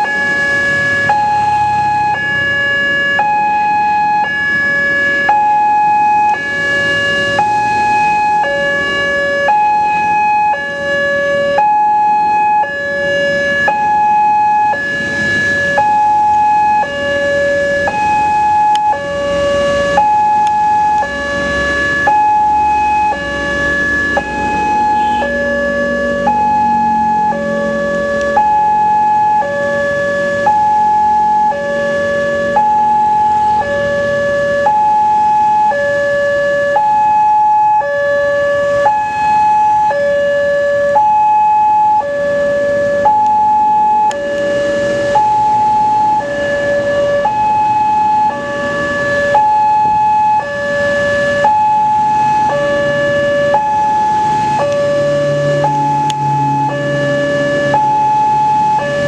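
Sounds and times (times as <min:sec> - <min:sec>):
level crossing two-tone alarm: 0:00.0 - 0:59.0
low engine rumble: 0:17.9 - 0:34.6.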